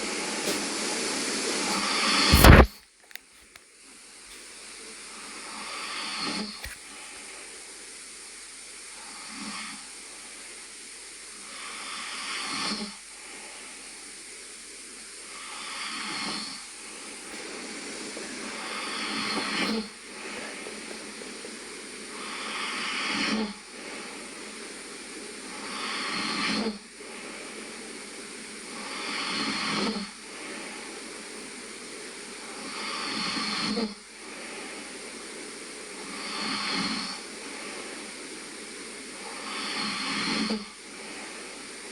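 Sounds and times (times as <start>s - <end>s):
steady hiss: 0.0s - 41.9s
person snoring: 1.7s - 2.7s, 15.6s - 26.8s.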